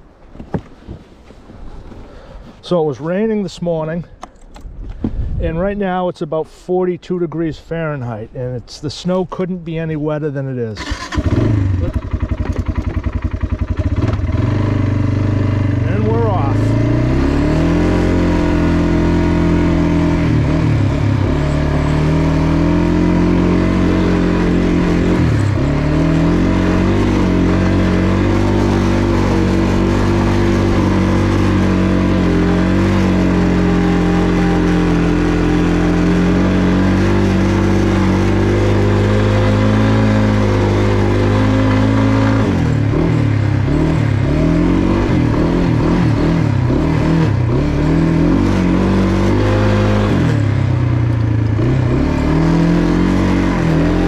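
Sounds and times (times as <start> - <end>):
atv engine running under load: 10.8 - 54.0.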